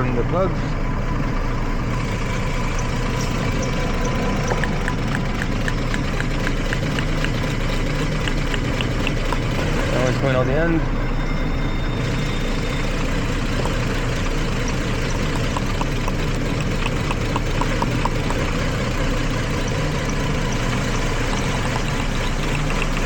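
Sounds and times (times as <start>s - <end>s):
engine idling rough: 0.0s - 23.0s.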